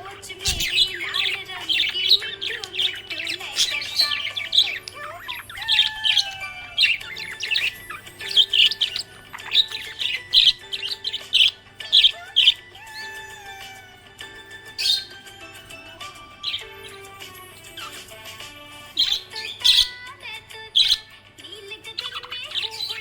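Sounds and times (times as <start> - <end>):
budgerigar chirping: 0.0 - 21.2, 21.9 - 23.0.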